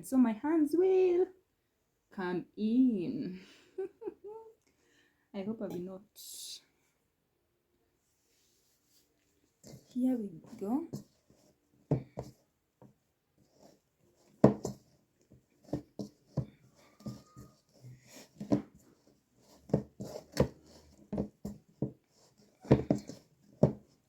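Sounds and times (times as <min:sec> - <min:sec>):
hands kneading dough: 0:08.8 - 0:24.0.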